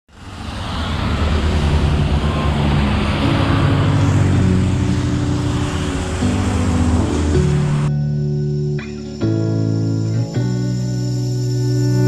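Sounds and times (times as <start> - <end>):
steady rushing noise: 0.1 - 8.2
music with low bass notes: 3.1 - 12.0.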